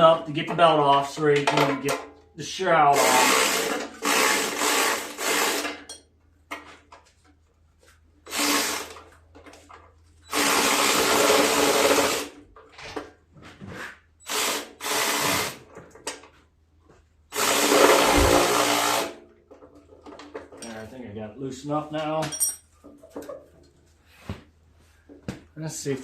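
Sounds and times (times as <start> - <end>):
power tool bursts: 2.9 - 5.9, 8.3 - 9.0, 10.3 - 12.4, 14.2 - 15.7, 17.3 - 19.2.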